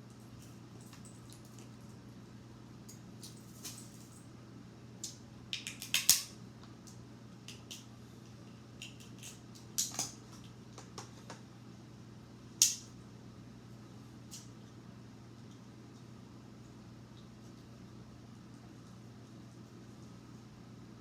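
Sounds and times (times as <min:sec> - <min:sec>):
crab shells cracking: 0:05.0 - 0:06.3.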